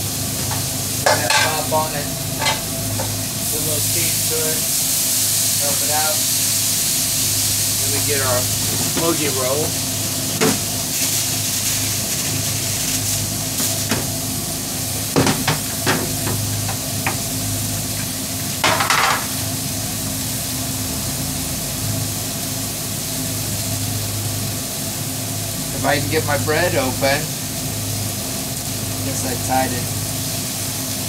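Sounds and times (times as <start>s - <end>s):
food sizzling on a griddle: 0.0s - 31.0s
steam hiss: 3.0s - 20.5s.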